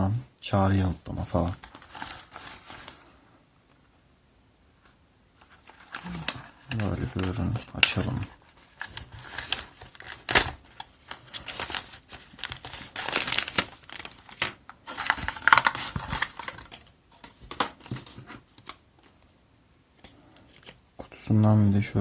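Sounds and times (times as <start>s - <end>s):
cardboard packaging rustling: 0.7s - 3.2s, 5.4s - 19.2s.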